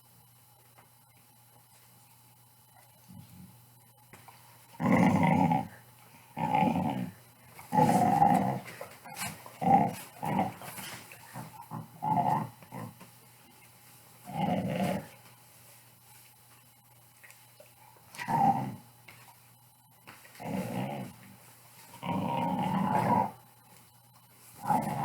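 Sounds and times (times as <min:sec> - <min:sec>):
dog play growling: 0:04.6 - 0:13.1, 0:14.2 - 0:15.3, 0:18.0 - 0:18.9, 0:20.2 - 0:23.5, 0:24.5 - 0:25.0.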